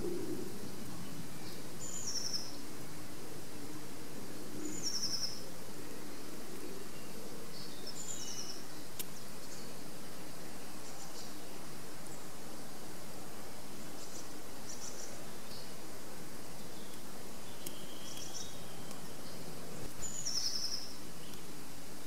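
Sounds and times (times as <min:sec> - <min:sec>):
wind in trees: 0:00.0 - 0:22.0
songbird trilling: 0:16.8 - 0:19.4.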